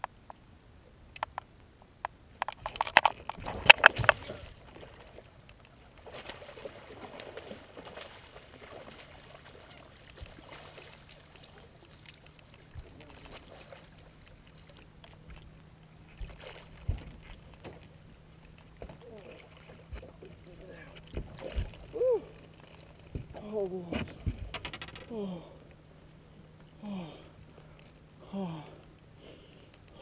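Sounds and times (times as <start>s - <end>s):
faint steady hum: 0.0s - 30.0s
sharp knocks in boat: 21.0s - 21.9s, 23.1s - 24.7s.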